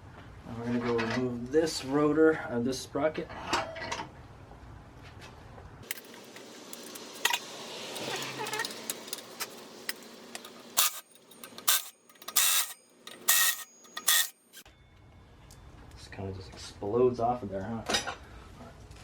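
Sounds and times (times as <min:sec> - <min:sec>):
metal tools clinking on wheel hub: 0:05.8 - 0:14.6.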